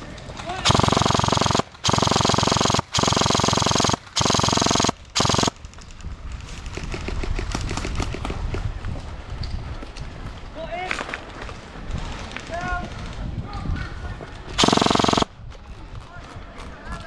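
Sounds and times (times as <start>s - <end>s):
airsoft gun firing full auto: 0.6s - 5.6s, 14.6s - 15.3s.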